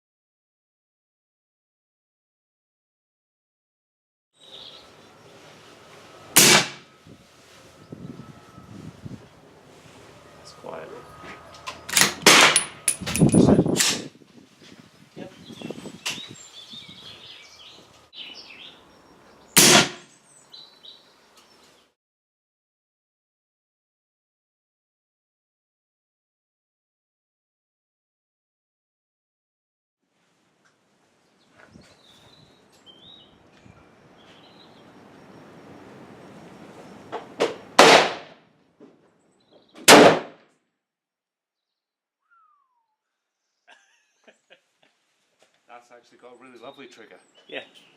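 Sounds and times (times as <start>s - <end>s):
gunshot: 6.4s - 6.8s, 12.0s - 12.6s, 19.6s - 20.1s, 37.8s - 38.4s, 39.9s - 40.4s.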